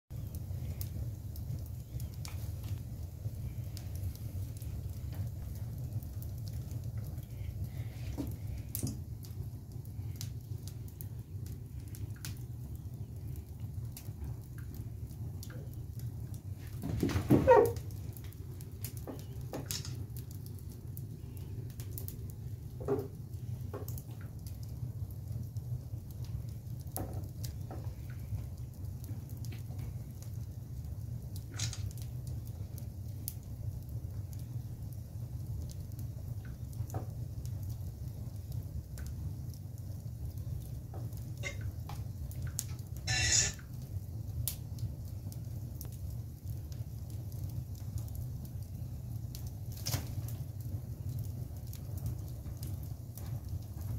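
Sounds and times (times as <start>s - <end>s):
wood fire crackling: 0.1s - 53.9s
fire hissing burst: 43.0s - 43.8s
short falling squeak: 43.1s - 43.6s.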